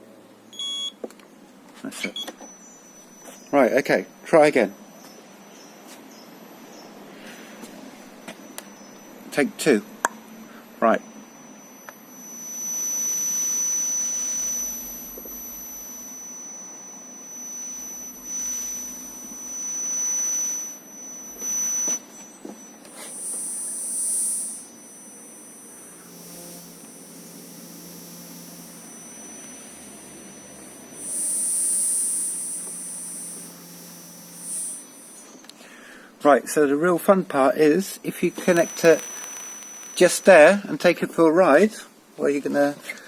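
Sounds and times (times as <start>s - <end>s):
high electronic whine: 2.2s - 35.8s, 38.1s - 40.6s
short high buzzes: 2.2s - 36.1s, 38.1s - 40.6s
low hum: 7.9s - 35.6s, 38.3s - 40.4s.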